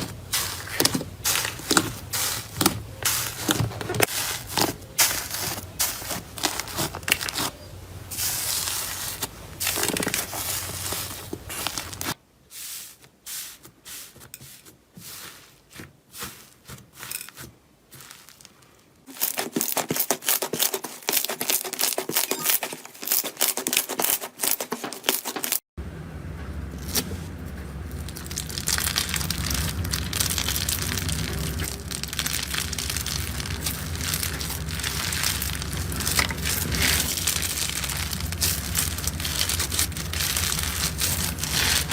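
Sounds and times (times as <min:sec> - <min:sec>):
slime crackling and popping: 0:27.9 - 0:41.9.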